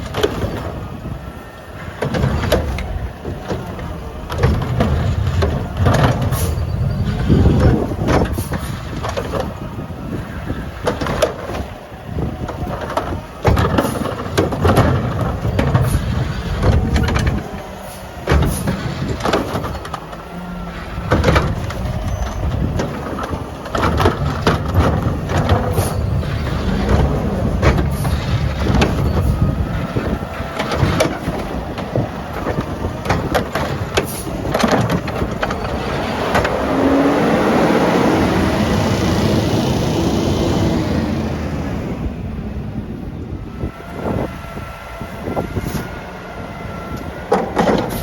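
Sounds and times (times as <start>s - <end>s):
garbage truck diesel engine: 0.0s - 48.0s
wind buffeting microphone: 0.0s - 48.0s
sharp knocks and bangs: 18.2s - 38.1s.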